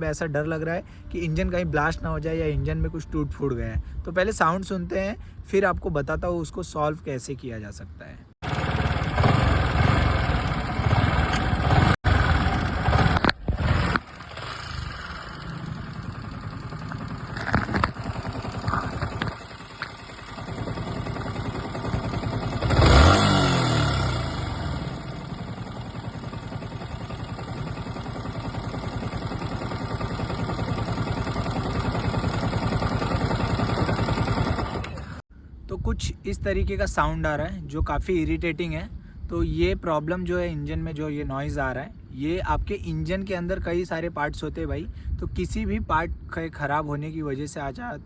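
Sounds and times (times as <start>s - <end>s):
motorcycle engine abnormal noise: 8.4s - 35.2s.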